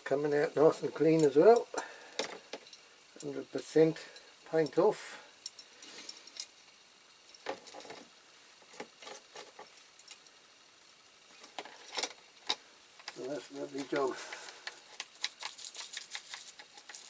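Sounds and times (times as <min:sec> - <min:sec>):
small metal parts clicking: 0:05.4 - 0:08.0, 0:11.4 - 0:17.0.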